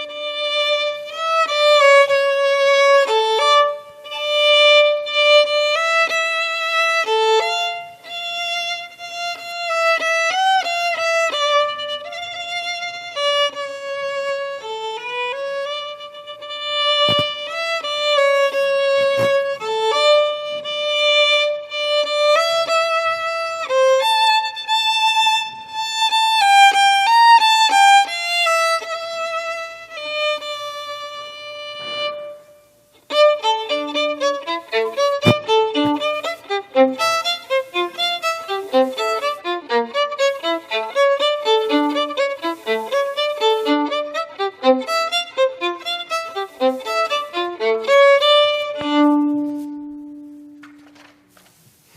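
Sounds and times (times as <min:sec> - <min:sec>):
violin music: 0:00.0 - 0:50.9.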